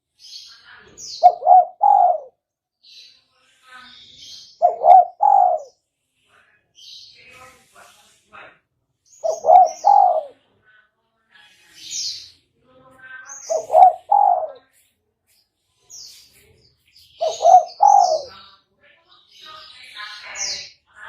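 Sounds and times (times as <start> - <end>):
small birds chirping: 0.0 - 21.0
dove cooing: 1.2 - 2.3, 4.6 - 5.7, 9.2 - 10.4, 13.5 - 14.6, 17.2 - 18.3.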